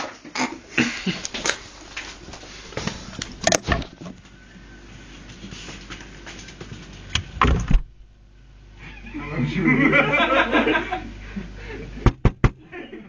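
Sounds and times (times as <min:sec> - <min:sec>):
fridge knocking and rattling: 0:03.3 - 0:04.2, 0:07.2 - 0:08.0
fridge door thudding shut: 0:07.2 - 0:08.0.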